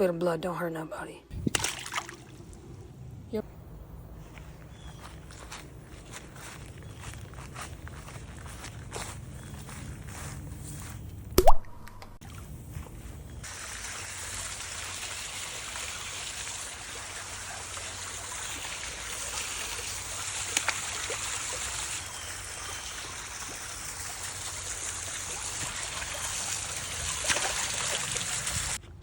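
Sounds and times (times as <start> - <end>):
water trickling: 13.4 - 28.8.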